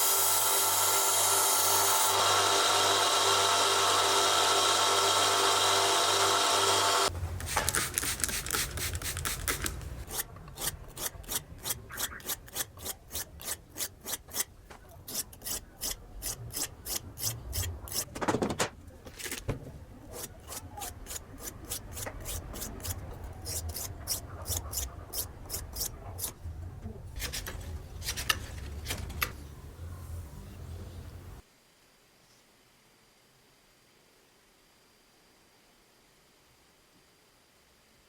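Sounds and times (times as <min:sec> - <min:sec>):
abrasive rubbing on knife: 0:10.0 - 0:14.5.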